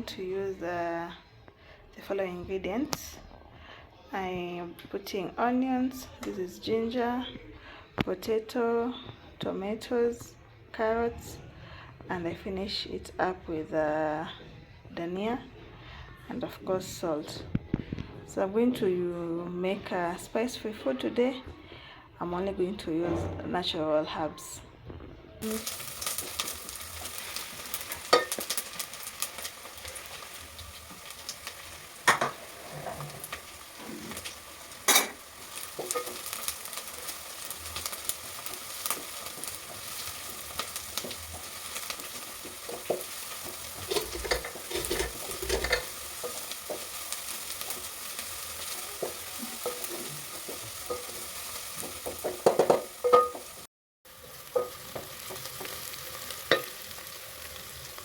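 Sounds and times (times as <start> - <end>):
food sizzling in a pot: 25.4 - 58.0
spoon stirring: 26.2 - 28.8, 34.2 - 53.6, 54.5 - 55.7, 56.5 - 56.8
spoon knocking against pot: 51.8 - 53.6, 56.5 - 56.7.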